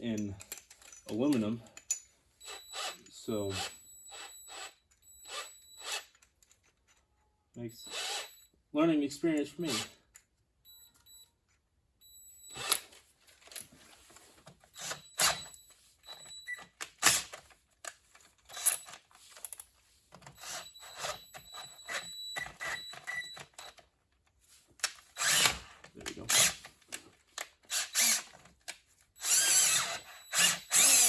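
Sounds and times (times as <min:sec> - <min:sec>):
electric drill whining: 0:02.5 - 0:03.0, 0:07.8 - 0:08.4, 0:25.2 - 0:25.6, 0:27.7 - 0:28.3, 0:29.2 - 0:31.0.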